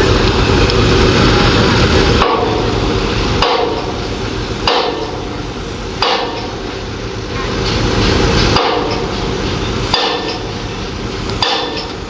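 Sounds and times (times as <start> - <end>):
loud low rumble: 0.0 - 12.0
hammer blows on metal: 3.4 - 5.4, 6.0 - 12.0.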